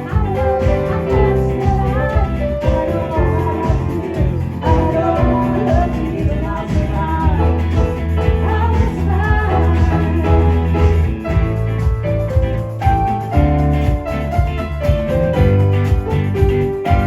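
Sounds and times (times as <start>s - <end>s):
person singing: 0.0s - 11.2s
live band playing: 0.0s - 17.0s
steady bass line: 0.0s - 17.0s.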